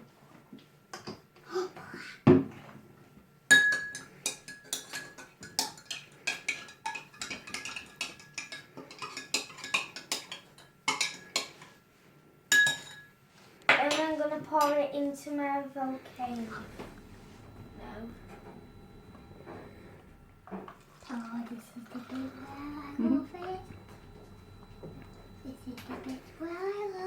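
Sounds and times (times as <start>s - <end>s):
utensil clinking against a bowl: 3.5s - 11.8s, 12.5s - 13.1s.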